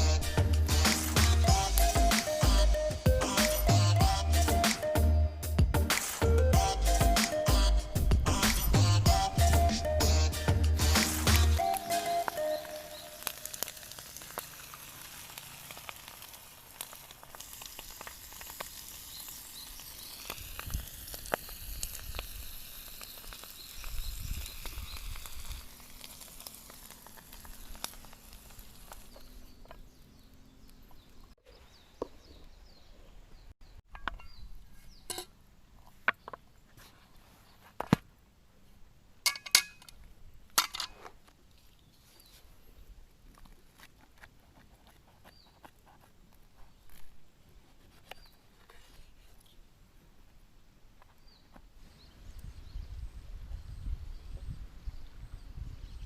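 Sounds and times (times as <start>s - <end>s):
food sizzling in a pan: 11.4s - 29.5s.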